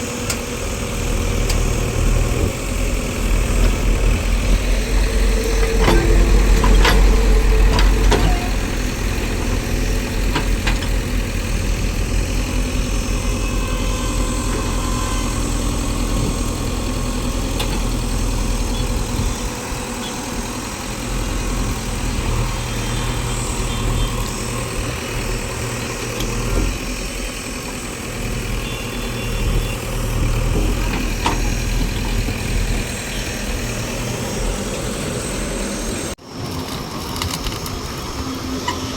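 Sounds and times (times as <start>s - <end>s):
diesel engine running at low revs: 0.0s - 36.4s.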